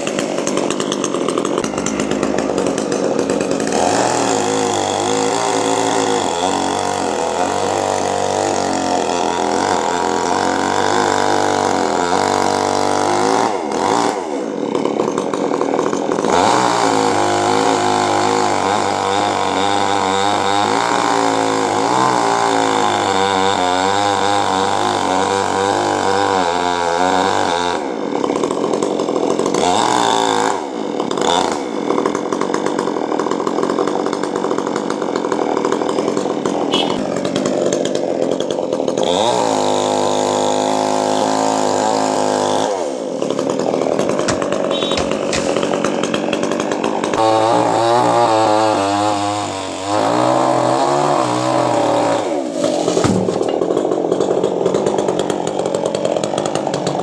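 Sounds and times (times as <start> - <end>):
chainsaw cutting wood: 0.0 - 57.0.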